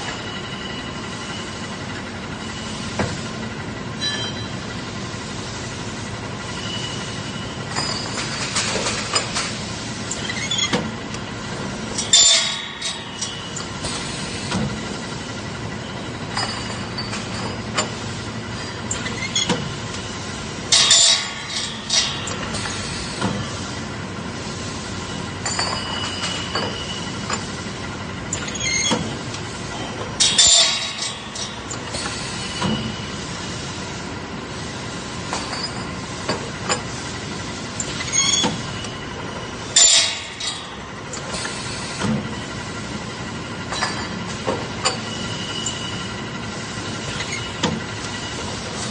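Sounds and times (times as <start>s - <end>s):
factory machinery running: 0.0s - 48.9s
metallic clanks and knocks: 20.7s - 23.5s, 30.2s - 31.6s, 39.8s - 41.4s.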